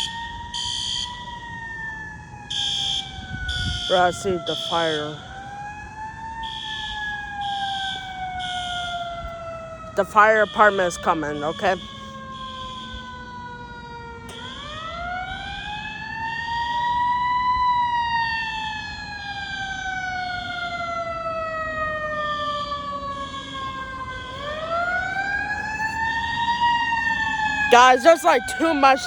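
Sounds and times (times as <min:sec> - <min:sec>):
fire alarm beeping: 0:00.0 - 0:01.5, 0:02.5 - 0:05.7, 0:06.3 - 0:09.4, 0:10.0 - 0:13.4, 0:23.2 - 0:29.0
fire engine siren wailing: 0:00.0 - 0:29.0.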